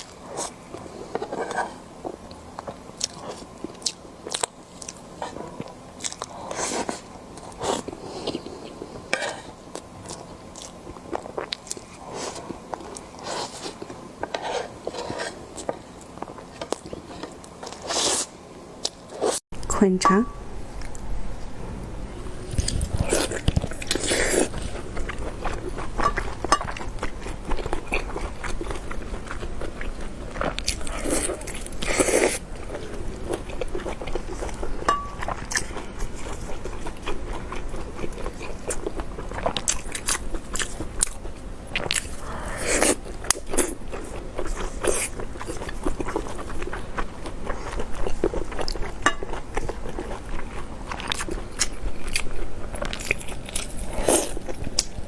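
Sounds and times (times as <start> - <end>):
person chewing meat: 0.0 - 19.4, 22.5 - 55.0.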